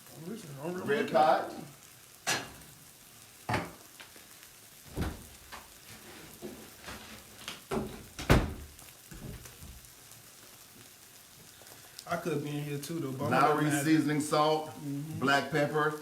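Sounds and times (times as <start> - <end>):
kitchen items knocking and clunking: 3.5 - 3.8, 4.9 - 5.7, 7.6 - 9.8.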